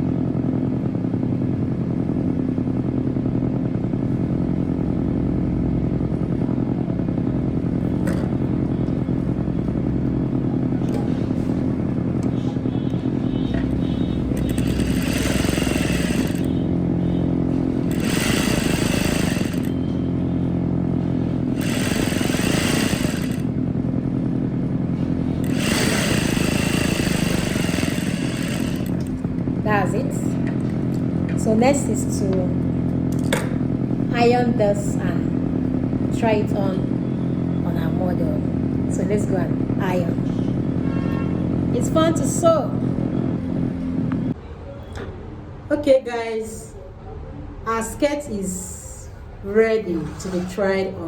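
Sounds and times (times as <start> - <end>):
motor hum: 0.0 - 44.4
sewing machine stitching: 13.3 - 16.6, 17.6 - 19.9, 21.3 - 23.5, 25.4 - 29.5.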